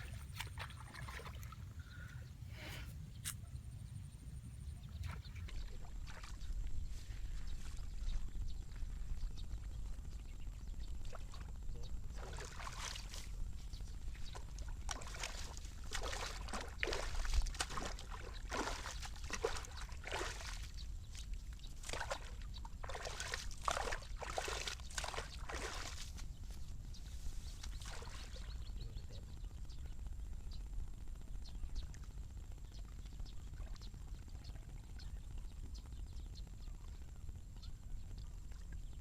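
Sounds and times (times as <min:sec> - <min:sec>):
shallow water splashing: 0:00.0 - 0:02.1, 0:14.3 - 0:20.8, 0:21.7 - 0:26.2
low steady rumble: 0:00.0 - 0:20.0, 0:20.7 - 0:39.0.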